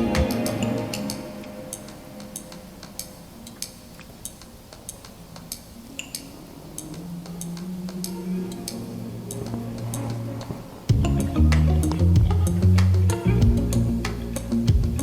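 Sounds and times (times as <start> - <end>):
light ticking beat: 10.9 - 15.0.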